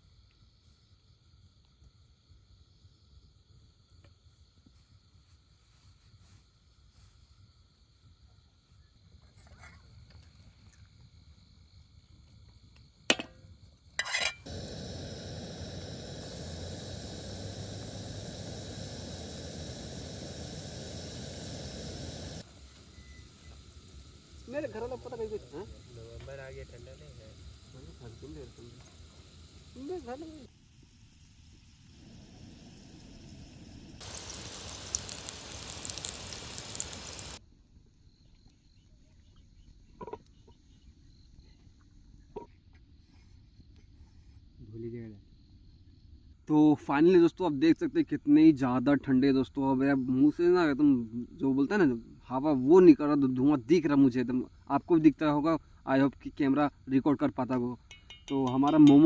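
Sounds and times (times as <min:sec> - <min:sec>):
crickets chirping: 0:00.0 - 0:59.0
food sizzling in oil: 0:14.0 - 0:37.4.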